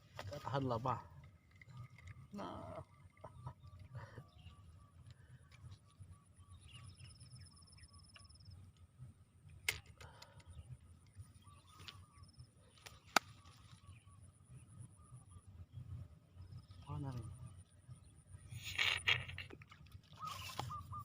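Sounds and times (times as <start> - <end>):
pulsing insect trills: 0.5 - 8.8.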